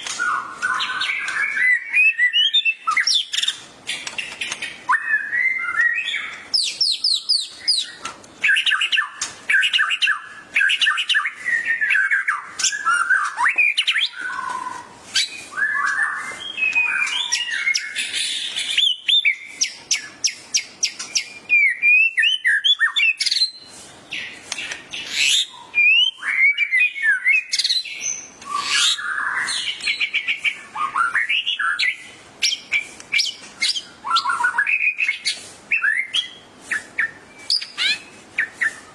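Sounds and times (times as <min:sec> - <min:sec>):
songbird singing: 0:00.0 - 0:38.9.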